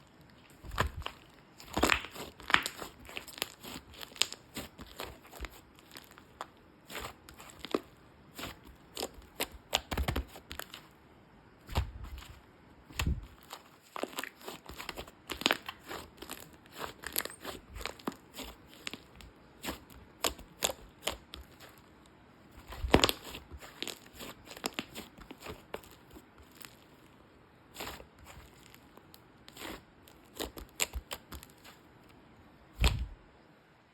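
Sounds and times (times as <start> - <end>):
slime clicking and popping: 0.8 - 5.2.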